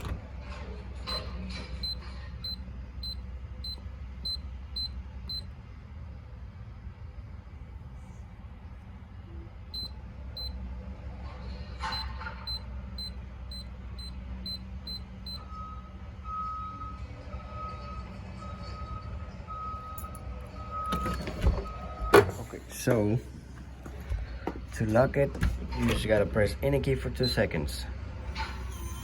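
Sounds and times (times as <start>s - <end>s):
mechanical lock sound: 0.0s - 0.4s.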